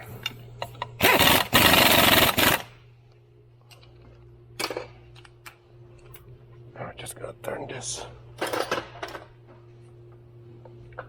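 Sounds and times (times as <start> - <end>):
pneumatic tool whine: 1.0 - 2.7.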